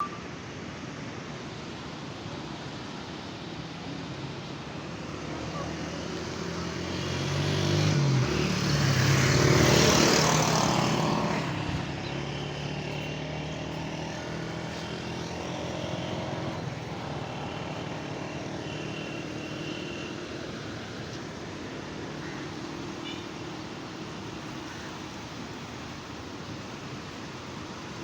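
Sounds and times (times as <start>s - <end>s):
steady engine hum: 0.0s - 28.0s
vehicle engine passing: 4.9s - 23.0s.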